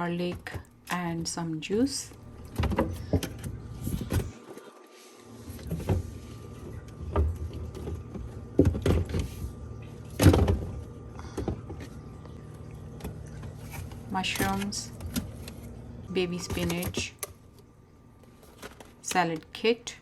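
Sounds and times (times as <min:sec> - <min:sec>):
steady low hum: 0:00.0 - 0:20.0
groceries knocking on fridge shelves: 0:05.6 - 0:12.0, 0:12.9 - 0:17.3.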